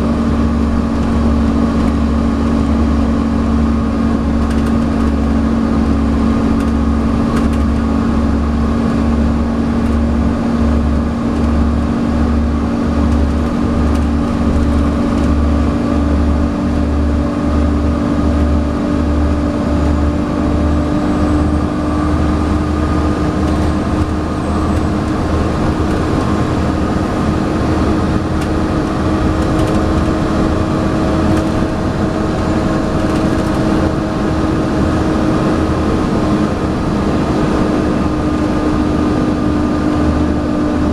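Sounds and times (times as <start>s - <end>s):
bus engine running: 0.0s - 40.9s
cooling fan whine: 0.0s - 40.9s
low engine throb: 0.0s - 40.9s.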